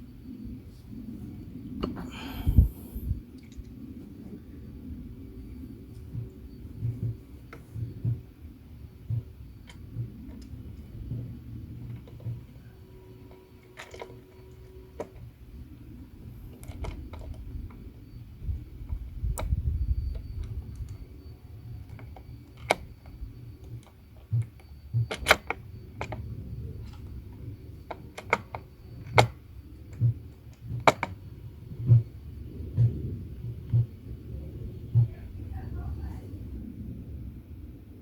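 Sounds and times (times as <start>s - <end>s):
low rumble: 0.0s - 12.6s
small tools clicking and tapping: 27.9s - 31.2s.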